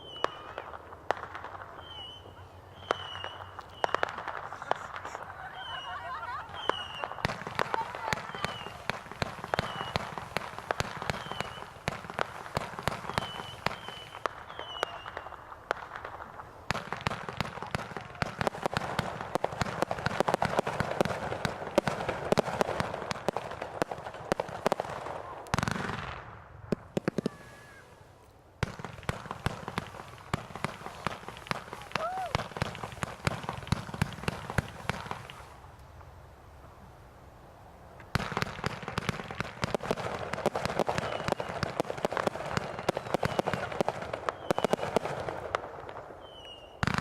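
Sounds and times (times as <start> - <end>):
fireworks crackling pops: 0.0 - 37.0, 37.9 - 47.0.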